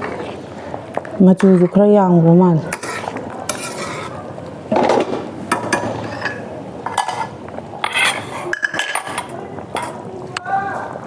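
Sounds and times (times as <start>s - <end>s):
metal utensils and dishes clinking: 2.7s - 10.0s.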